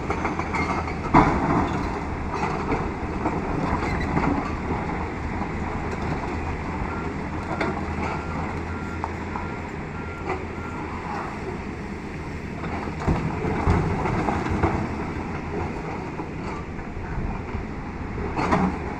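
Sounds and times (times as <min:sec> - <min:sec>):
excavator engine running: 0:00.0 - 0:18.9
beeping alarm: 0:06.8 - 0:11.5.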